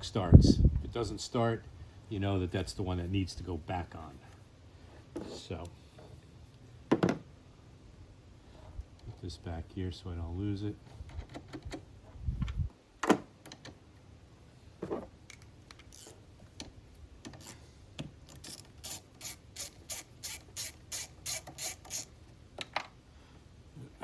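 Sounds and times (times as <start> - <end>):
ratchet wrench clicking: 15.8 - 16.2, 18.3 - 22.1.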